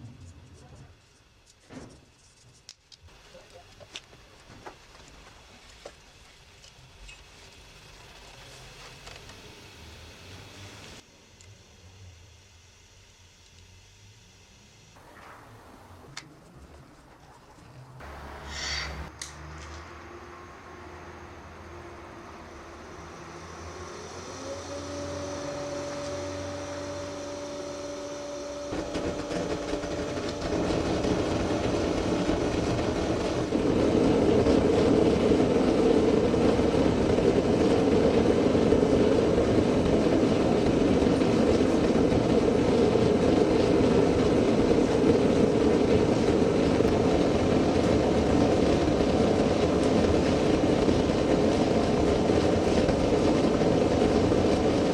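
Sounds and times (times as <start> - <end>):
blower spinning up hum: 0.0 - 54.9
gas flame roar: 3.1 - 54.9.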